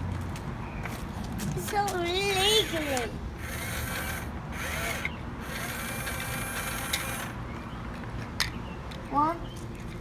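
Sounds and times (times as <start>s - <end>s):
toy crane winch gears running: 2.5s - 7.4s.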